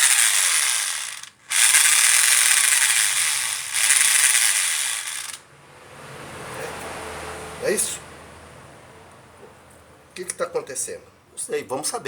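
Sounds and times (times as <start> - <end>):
rotary hammer rattling: 0.0 - 5.4.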